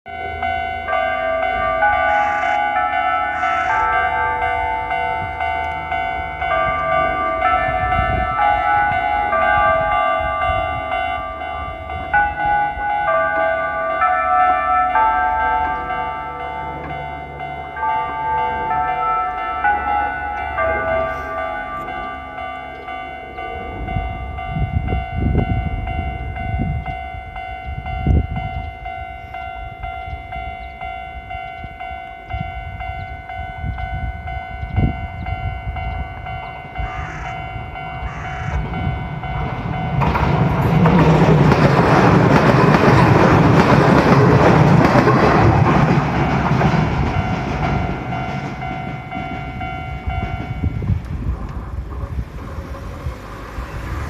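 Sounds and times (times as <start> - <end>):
level-crossing warning bell ringing: 0.0 - 54.0
train passing over crossing: 0.1 - 54.0.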